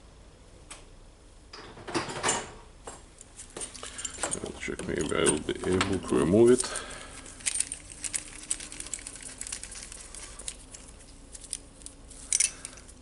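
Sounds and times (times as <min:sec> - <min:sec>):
hand tools tapping metal parts: 0:03.6 - 0:13.0.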